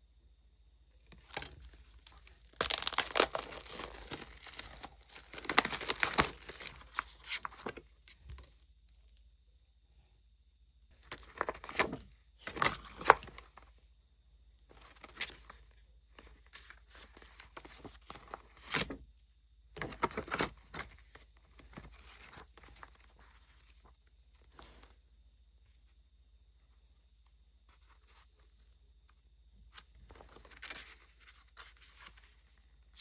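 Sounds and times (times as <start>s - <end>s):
packaging rustling and tearing: 1.3s - 7.8s.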